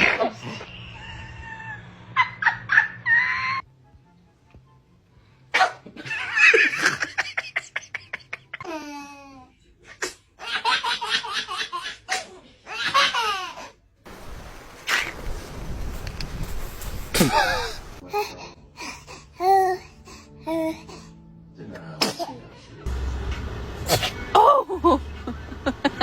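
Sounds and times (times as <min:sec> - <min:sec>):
steady hiss: 0:14.1 - 0:18.0.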